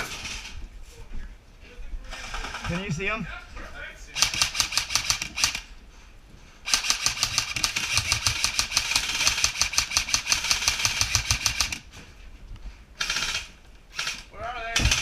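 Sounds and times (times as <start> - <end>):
airsoft rifle full-auto burst: 4.2 - 5.7, 6.7 - 11.8, 13.0 - 15.0.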